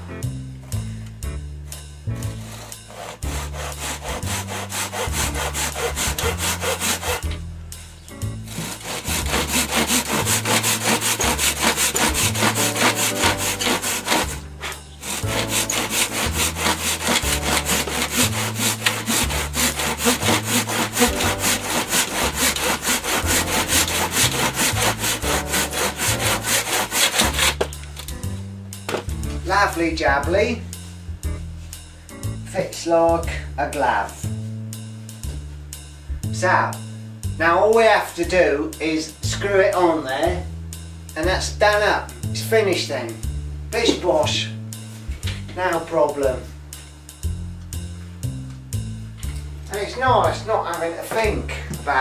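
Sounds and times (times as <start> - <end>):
pull saw cutting: 2.2 - 7.4, 8.5 - 28.1.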